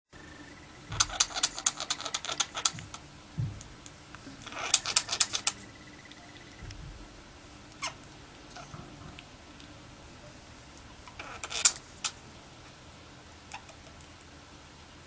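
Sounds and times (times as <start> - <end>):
budgerigar coughing: 0.9 - 3.0, 4.3 - 5.7, 11.1 - 12.2, 13.5 - 14.0.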